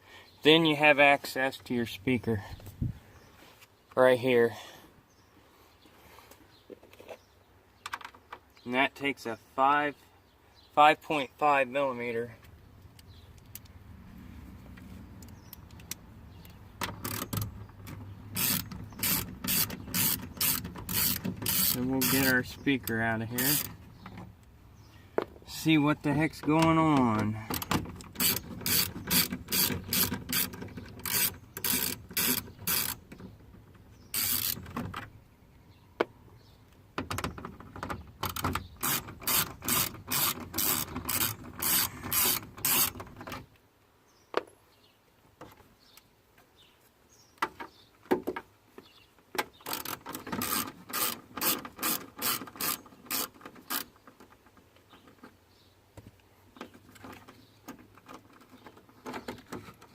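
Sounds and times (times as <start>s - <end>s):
ratchet wrench clicking: 18.3s - 22.3s, 28.1s - 33.0s, 34.1s - 34.6s, 38.2s - 43.0s, 49.7s - 53.9s.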